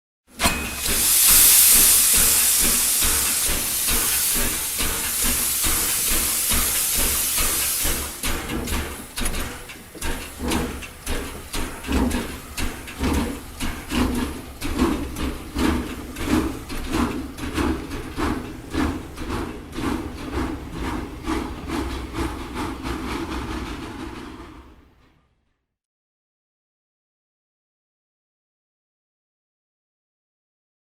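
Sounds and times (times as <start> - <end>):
steam locomotive chuffing: 0.3 - 25.2
steam hissing: 0.4 - 24.0.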